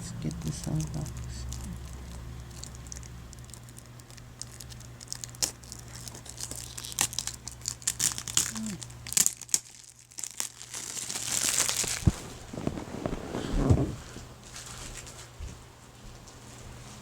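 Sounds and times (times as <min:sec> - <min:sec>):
plastic shrink wrap crinkling: 0:00.0 - 0:15.3.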